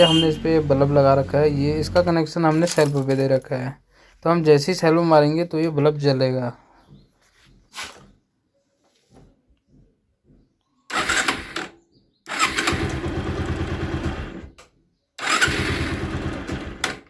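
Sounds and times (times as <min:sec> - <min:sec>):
electric starter cranking engine: 0:10.9 - 0:11.7, 0:12.3 - 0:14.6, 0:15.2 - 0:17.0.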